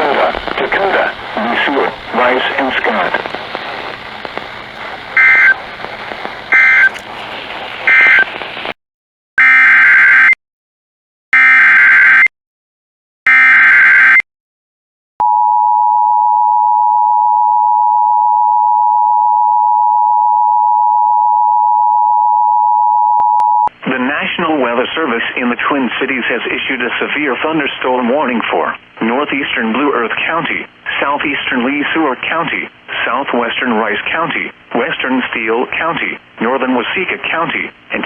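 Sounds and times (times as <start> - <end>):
data burst tones: 0.0 - 8.7
radio static: 0.0 - 8.8.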